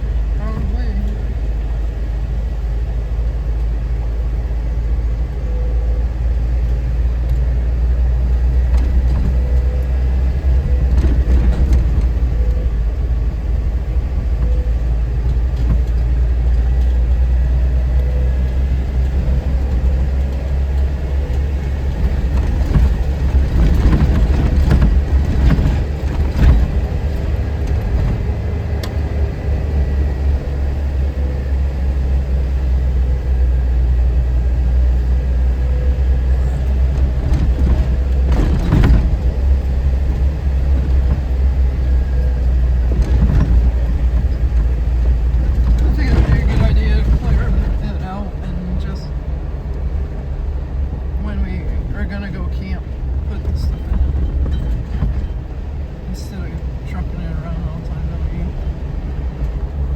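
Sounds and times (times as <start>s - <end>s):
vehicle engine and road rumble: 0.0s - 59.9s
knocks and rattles: 19.0s - 29.2s, 36.6s - 48.6s, 53.0s - 56.1s.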